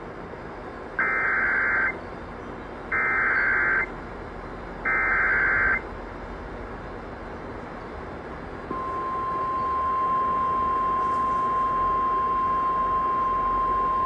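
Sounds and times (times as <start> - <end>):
broadcast hiss: 1.0 - 2.0, 2.9 - 4.0, 4.8 - 5.8.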